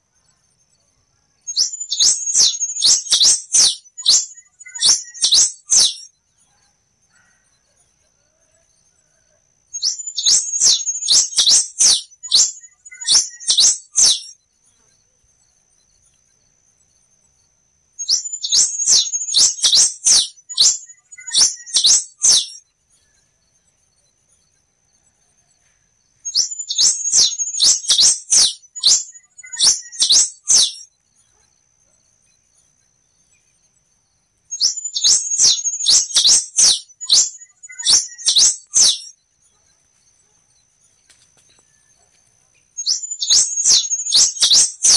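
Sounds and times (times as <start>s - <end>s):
finch singing rapid high chirps: 1.5s - 6.1s, 9.8s - 14.4s, 18.0s - 22.6s, 26.3s - 30.9s, 34.5s - 39.2s, 42.8s - 44.9s.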